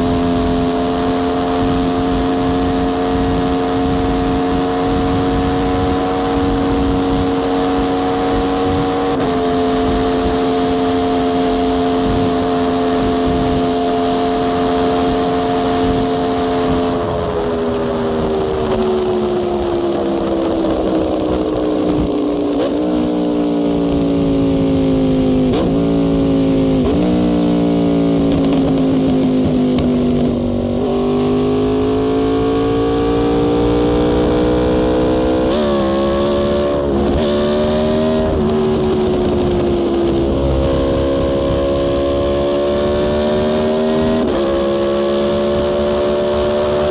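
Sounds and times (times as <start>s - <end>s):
motorcycle engine on highway: 0.0s - 46.9s
motorcycle gear changes: 14.4s - 46.9s.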